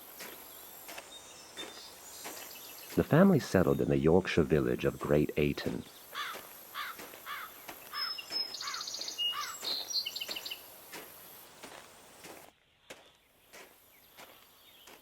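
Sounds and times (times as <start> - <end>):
faint outdoor hiss: 0.0 - 15.0
bird chirping: 0.4 - 10.7
bird trilling song: 5.7 - 10.7.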